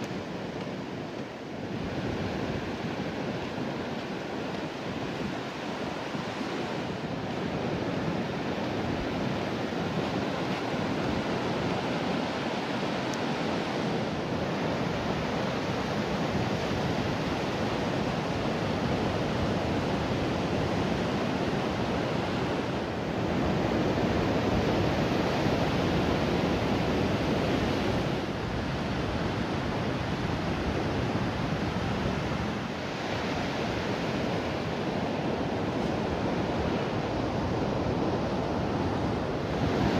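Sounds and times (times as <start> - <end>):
ocean surf on beach: 0.0 - 39.9
wind on microphone: 0.0 - 39.9.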